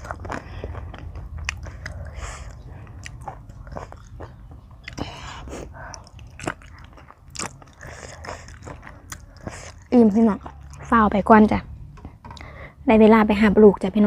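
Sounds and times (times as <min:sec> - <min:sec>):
wet mouth clicks: 0:00.0 - 0:05.2, 0:05.8 - 0:10.9
person chewing crunchy food: 0:00.0 - 0:11.0.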